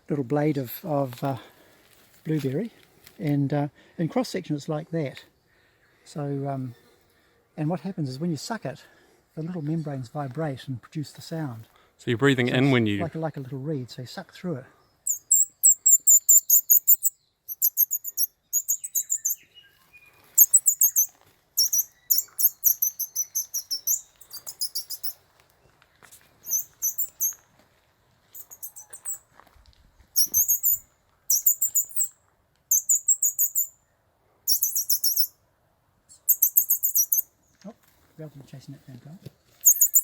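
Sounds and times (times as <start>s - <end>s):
high-pitched leaf squeaks: 15.1s - 19.4s, 20.3s - 25.2s, 26.4s - 27.4s, 28.4s - 29.3s, 30.2s - 32.1s, 36.2s - 37.2s, 39.6s - 40.0s.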